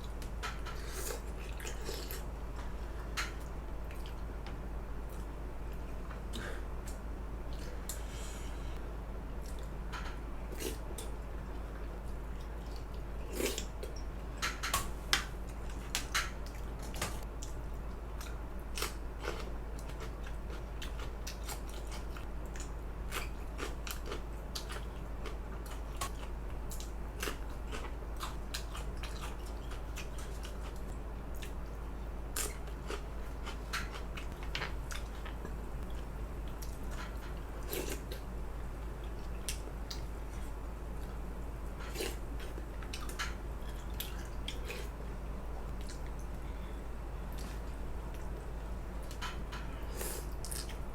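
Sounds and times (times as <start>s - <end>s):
steady low hum: 0.0s - 50.9s.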